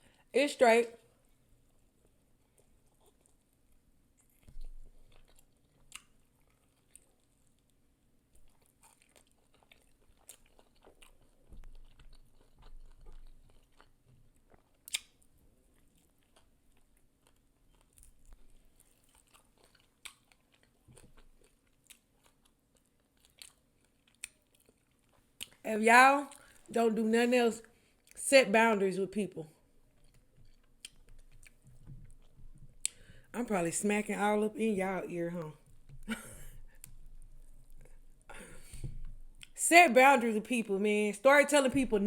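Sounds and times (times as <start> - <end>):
person chewing wet mouth smacks: 4.2 - 7.3, 8.3 - 15.3, 15.9 - 25.6, 30.0 - 33.3
sharp bite clicks: 14.9 - 15.1.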